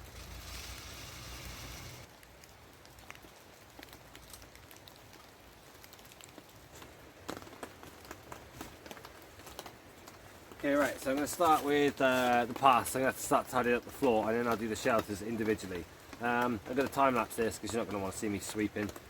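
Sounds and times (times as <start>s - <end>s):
loud hiss with low rumble: 0.0s - 2.5s
light rain with ticking drops: 0.0s - 19.0s.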